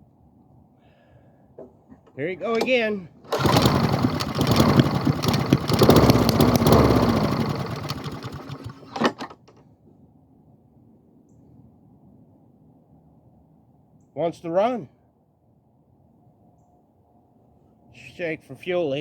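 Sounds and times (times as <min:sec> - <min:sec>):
lawn mower engine running: 0:02.3 - 0:09.6
engine coughing: 0:03.3 - 0:08.9.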